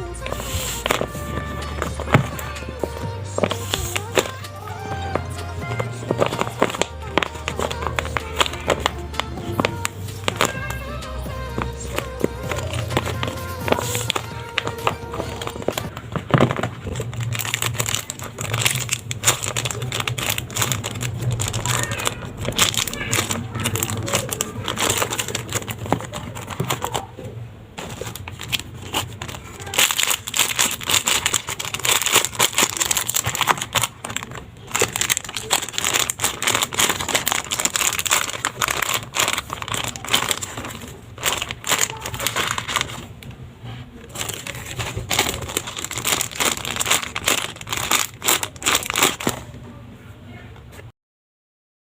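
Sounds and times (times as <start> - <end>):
taped paper crinkling: 0.0 - 43.3, 44.0 - 49.6.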